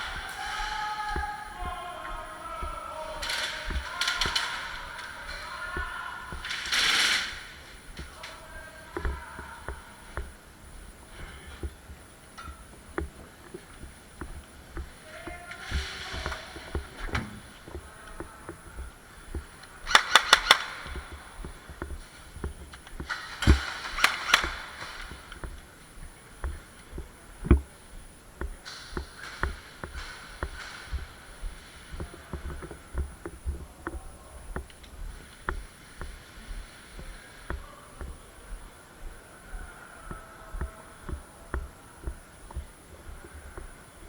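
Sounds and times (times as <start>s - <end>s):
airsoft guns firing: 0.0s - 8.2s, 19.3s - 22.3s, 23.0s - 25.5s
footsteps and gear knocking: 0.0s - 44.0s.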